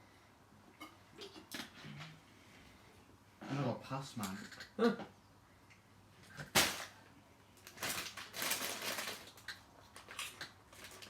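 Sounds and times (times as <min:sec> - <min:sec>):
crackling and rustling: 0:06.2 - 0:11.0.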